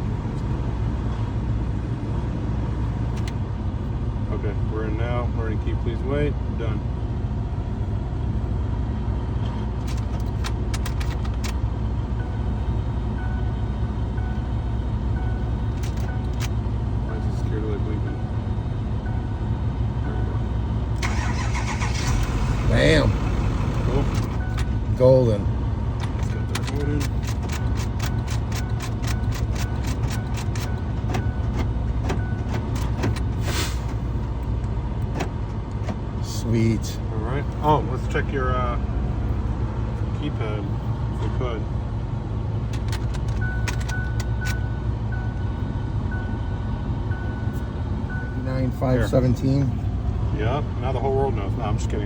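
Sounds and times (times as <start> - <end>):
vehicle engine idling: 0.0 - 52.0
regular sharp clicking: 26.0 - 33.2.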